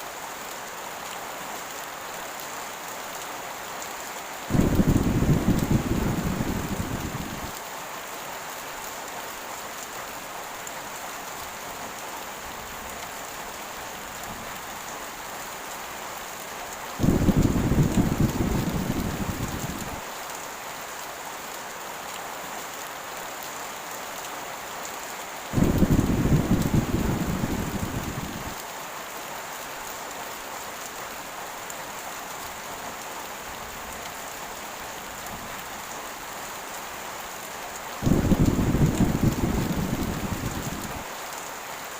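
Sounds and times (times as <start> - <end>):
heavy rain falling: 0.0 - 41.9
rumbling thunder claps: 4.5 - 7.5, 17.0 - 20.0, 25.6 - 28.6, 38.0 - 41.0.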